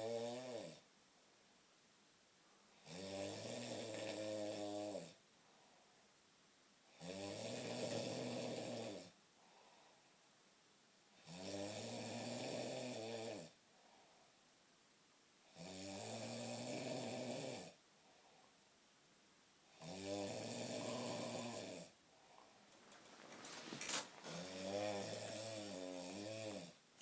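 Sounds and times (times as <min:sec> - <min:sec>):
man snoring through nose: 0:02.8 - 0:05.2, 0:07.0 - 0:09.1, 0:11.2 - 0:13.6, 0:15.6 - 0:17.8, 0:19.8 - 0:22.0, 0:24.3 - 0:26.8
quiet breathing: 0:05.4 - 0:06.2, 0:09.3 - 0:10.3, 0:13.6 - 0:14.5, 0:17.9 - 0:18.7, 0:20.4 - 0:26.8.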